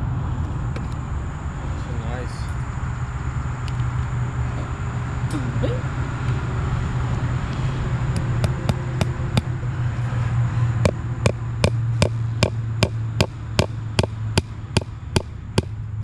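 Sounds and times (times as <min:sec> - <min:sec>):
low engine hum: 0:00.0 - 0:16.0
hammer blows: 0:10.8 - 0:15.8.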